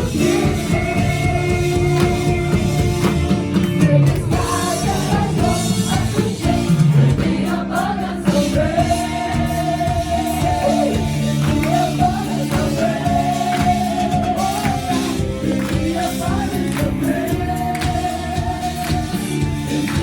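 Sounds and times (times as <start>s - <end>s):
band playing: 0.0s - 20.0s
singers holding long notes: 0.0s - 20.0s.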